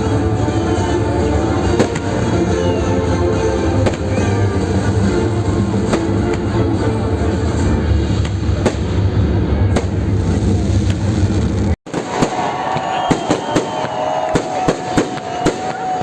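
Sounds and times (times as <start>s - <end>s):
loud bass-heavy music: 0.0s - 11.8s
fireworks bangs: 1.7s - 2.4s, 3.8s - 4.3s, 7.9s - 16.0s
fireworks whistling: 3.8s - 4.8s, 8.0s - 16.0s.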